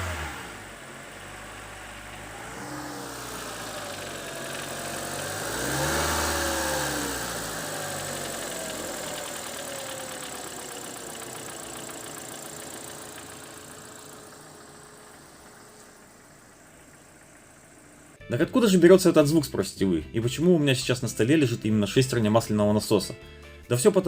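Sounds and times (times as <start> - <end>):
car engine revving: 0.0 - 18.3
rhythmic engine clatter: 3.1 - 18.2.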